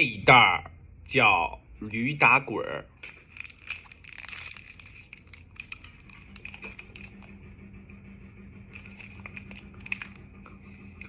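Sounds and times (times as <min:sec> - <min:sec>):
plastic packaging crinkling: 0:03.0 - 0:07.3, 0:08.7 - 0:10.2.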